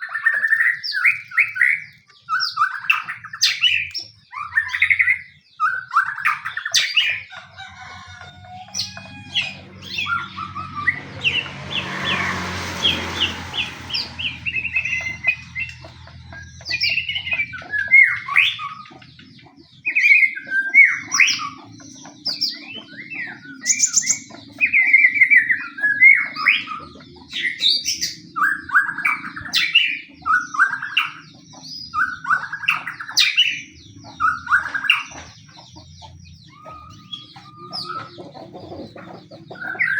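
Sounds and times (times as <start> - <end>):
songbird singing: 0.0 - 39.9
harsh rattling bird call: 6.0 - 18.9.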